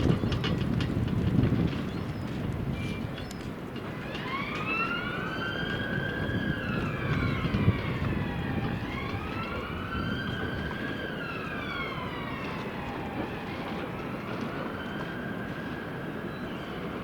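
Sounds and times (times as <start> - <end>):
street traffic rumble: 0.0 - 17.0
emergency siren wailing: 3.8 - 17.0.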